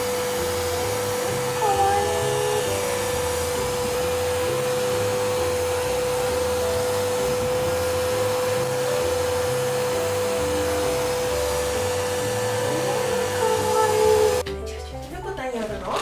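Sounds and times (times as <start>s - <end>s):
pet grooming vacuum running: 0.0s - 14.4s, 15.8s - 16.0s.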